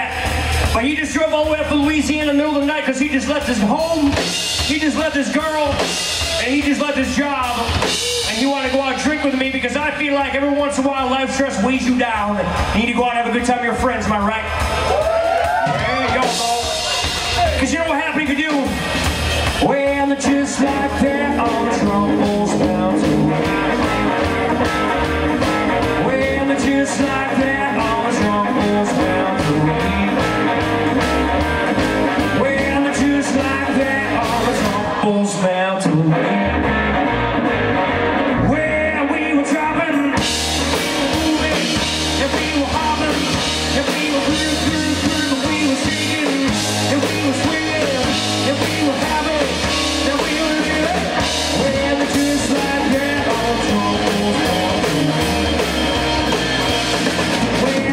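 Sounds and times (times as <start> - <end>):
live rock band playing: 0.0 - 57.9.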